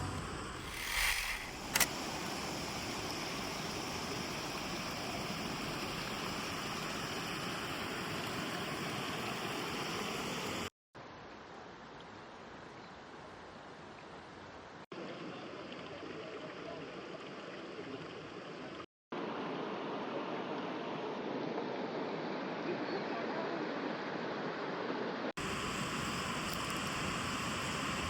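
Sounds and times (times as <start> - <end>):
sharp click: 0.0 - 2.1
rushing outdoor noise: 24.6 - 28.0.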